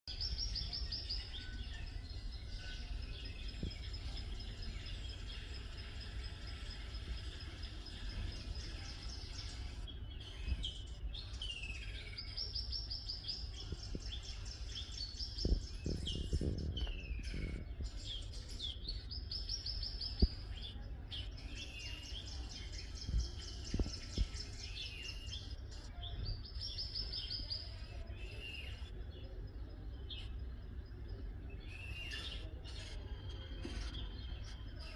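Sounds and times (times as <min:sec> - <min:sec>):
birds chirping: 0:00.1 - 0:34.9.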